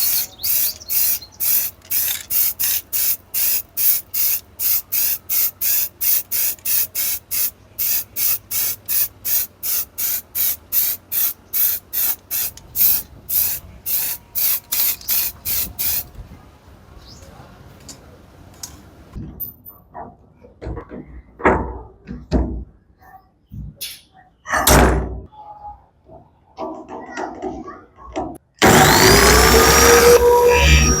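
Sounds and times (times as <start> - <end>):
sharp hissing strokes: 0.0 - 16.1.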